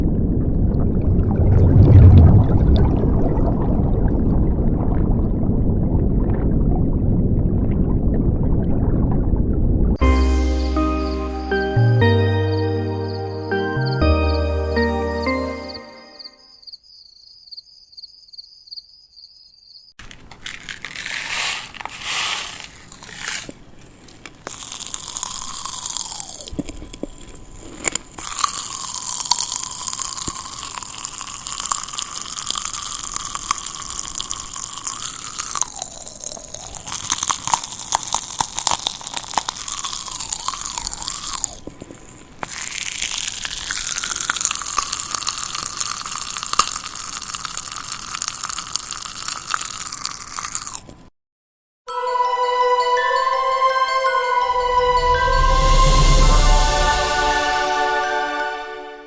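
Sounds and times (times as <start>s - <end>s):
crackling and rushing noise: 0.9s - 5.0s.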